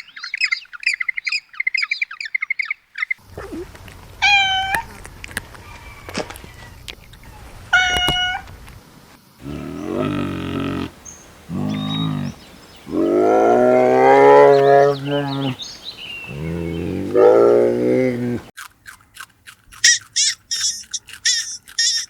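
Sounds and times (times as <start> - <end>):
animal low drawn-out calls: 3.3 - 8.4, 9.4 - 15.6, 16.2 - 18.5
animal high-pitched cry: 3.4 - 5.0, 19.8 - 22.0.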